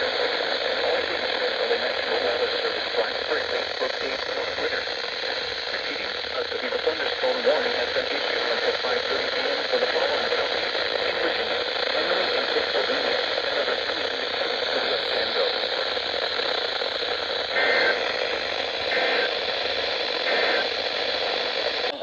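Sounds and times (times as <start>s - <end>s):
radio static: 0.0s - 22.0s.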